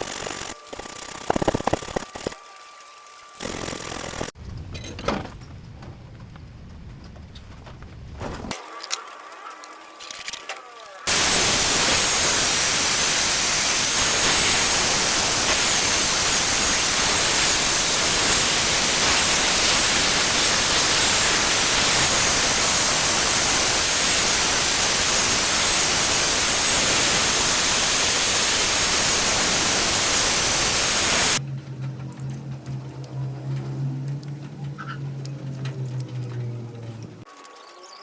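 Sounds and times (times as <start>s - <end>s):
loud steady hiss: 3.4s - 4.4s, 11.1s - 31.4s.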